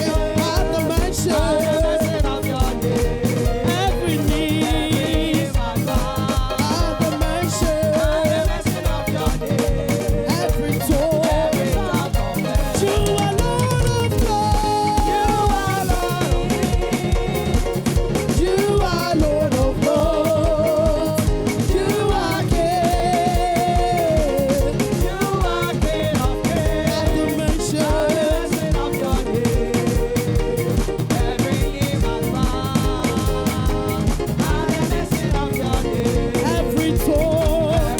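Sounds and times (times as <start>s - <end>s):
fast drum beat: 0.0s - 37.9s
person singing: 0.0s - 37.9s
upbeat gospel music: 0.0s - 37.9s.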